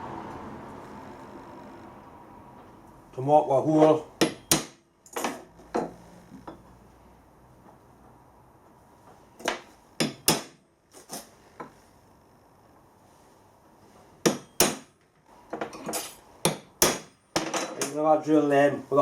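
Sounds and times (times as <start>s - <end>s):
hammer striking metal punch: 3.8s - 4.8s, 9.5s - 10.6s, 14.2s - 15.0s, 16.4s - 17.5s.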